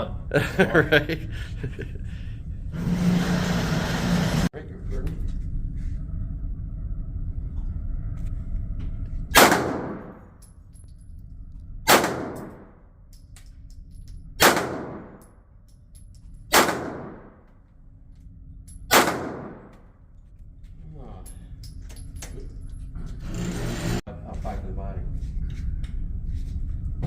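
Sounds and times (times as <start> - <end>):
low steady rumble: 0.0 - 2.8, 4.6 - 27.0
pistol shots echoing indoors: 9.3 - 10.3, 11.9 - 12.8, 14.4 - 15.3, 16.5 - 17.4, 18.8 - 19.9.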